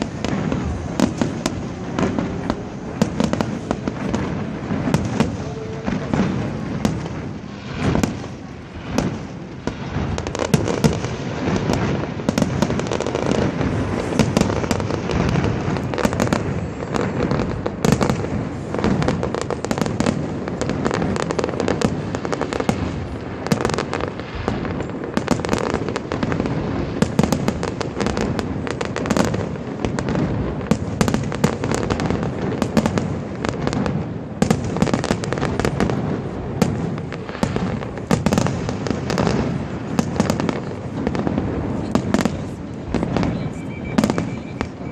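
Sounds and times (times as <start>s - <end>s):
fireworks bangs and crackling: 0.0s - 44.9s.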